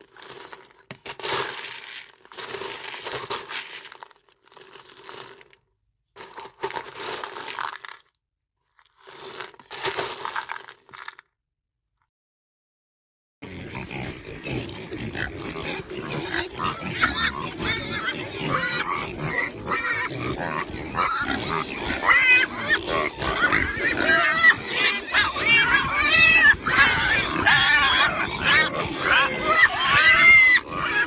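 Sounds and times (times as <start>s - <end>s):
pigs grunting: 13.4s - 31.0s
pigs squealing: 13.4s - 31.0s.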